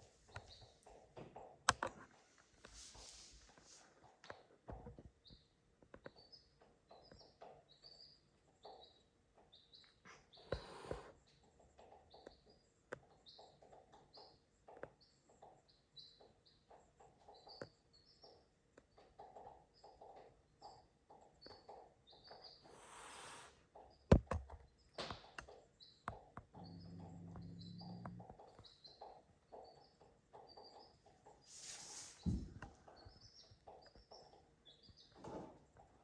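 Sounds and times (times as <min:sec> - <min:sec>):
small bird chirping: 0:00.0 - 0:01.8, 0:04.0 - 0:36.0
low hum: 0:26.6 - 0:28.2.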